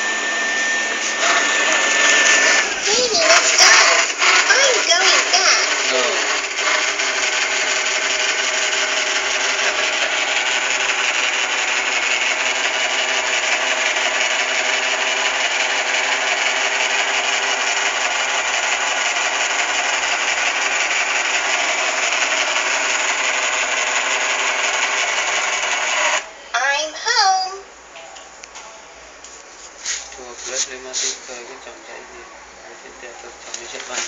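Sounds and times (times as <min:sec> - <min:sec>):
robot vacuum motor whirring: 0:00.0 - 0:26.2.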